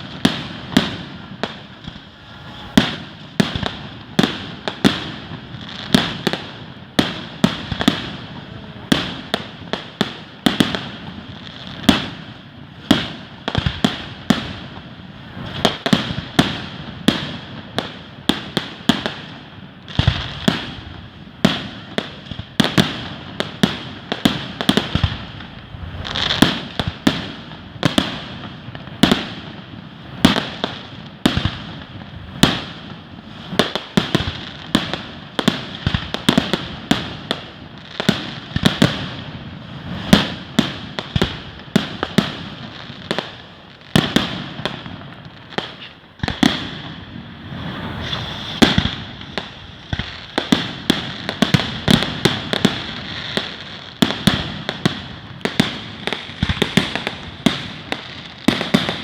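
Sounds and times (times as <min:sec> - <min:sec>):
fireworks hissing: 0:00.0 - 0:06.4, 0:32.6 - 0:59.0
fireworks bangs and pops: 0:00.0 - 0:59.0.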